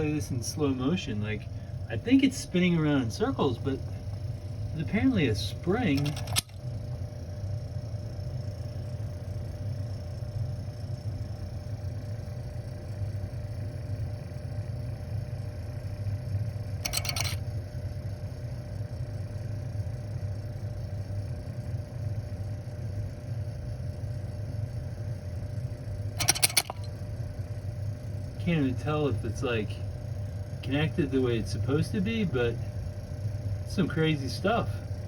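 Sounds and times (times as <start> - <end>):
brief rattle: 26.2 - 26.9.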